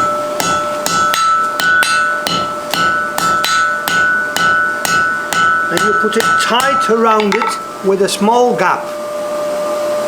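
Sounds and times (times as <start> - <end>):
hammer striking steel on anvil: 0.0 - 7.8
steel ringing: 0.0 - 8.2.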